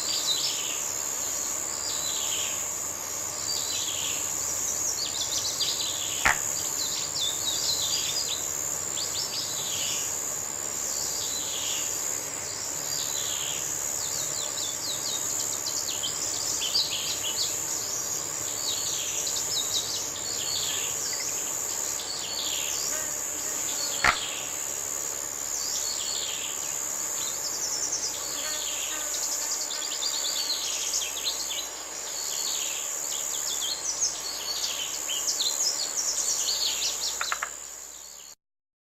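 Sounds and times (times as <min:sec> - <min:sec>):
insects droning: 0:00.0 - 0:38.4
birds chirping: 0:23.7 - 0:24.6.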